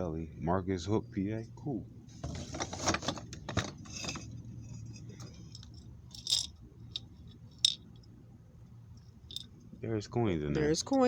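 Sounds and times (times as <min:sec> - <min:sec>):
small hard objects clinking: 0:07.6 - 0:07.8.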